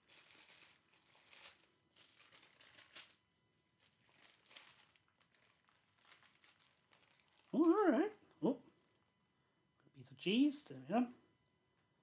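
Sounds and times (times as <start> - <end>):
paper wrapper crinkling: 0.0 - 8.2.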